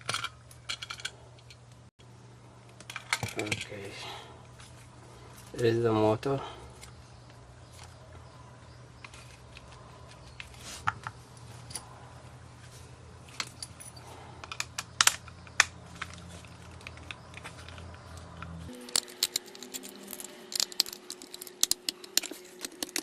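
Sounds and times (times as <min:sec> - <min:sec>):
small parts clicking and tapping: 0:00.0 - 0:01.8, 0:13.3 - 0:23.0
steady low hum: 0:00.0 - 0:23.0.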